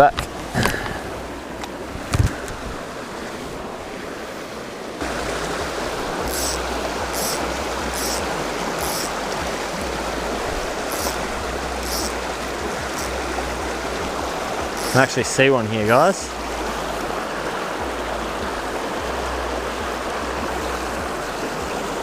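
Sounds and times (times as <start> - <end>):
mountain stream running: 0.0 - 22.0.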